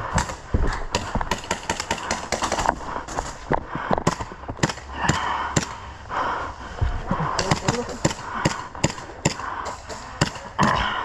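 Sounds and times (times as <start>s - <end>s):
airsoft guns firing: 0.0s - 3.4s, 4.0s - 5.8s, 7.4s - 10.8s.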